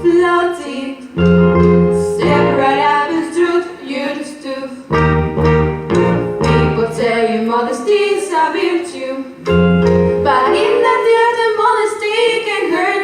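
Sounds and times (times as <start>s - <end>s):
show-tune music: 1.2s - 3.1s, 4.9s - 7.1s, 9.4s - 11.8s
person singing: 6.4s - 13.0s.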